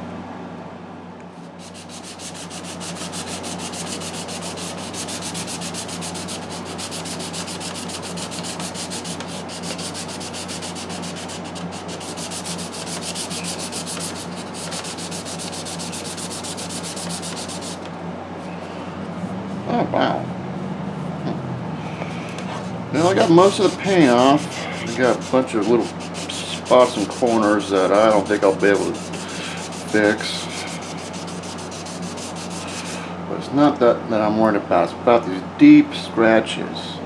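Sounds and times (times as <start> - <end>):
steady low hum: 0.0 - 37.0
brush scrubbing plastic: 1.3 - 17.9, 22.5 - 33.0.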